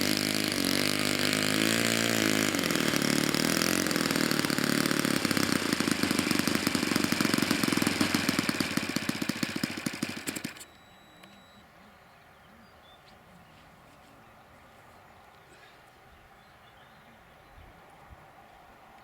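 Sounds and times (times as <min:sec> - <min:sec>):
model airplane engine idling: 0:00.0 - 0:11.6.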